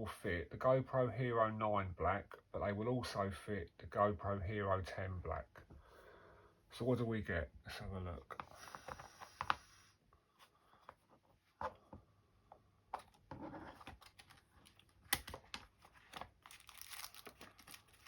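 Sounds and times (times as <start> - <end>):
packaging crinkling: 13.8 - 18.0.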